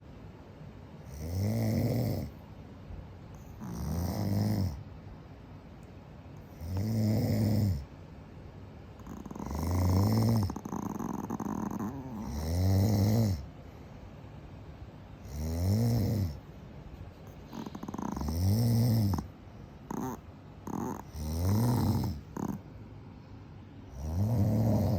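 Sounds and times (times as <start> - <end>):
dog snoring: 1.0 - 2.4, 3.3 - 4.8, 6.4 - 7.9, 9.0 - 13.5, 15.2 - 16.4, 17.2 - 22.7, 23.8 - 24.9.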